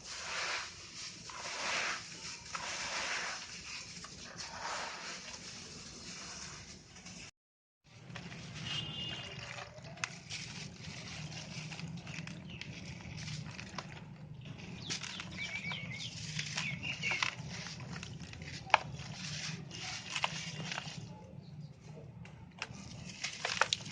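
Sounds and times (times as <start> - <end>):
cement lumps crunching: 7.9 - 21.2, 22.4 - 23.9.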